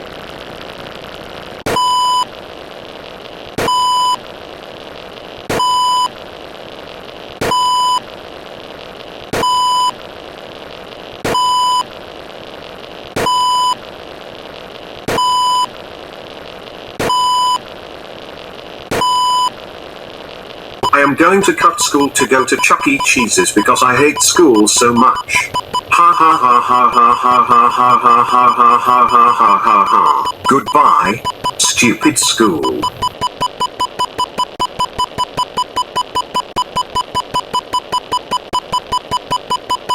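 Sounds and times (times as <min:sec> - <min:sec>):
steady hiss: 0:19.7 - 0:33.0
high-pitched electronic beeps: 0:20.8 - 0:39.9.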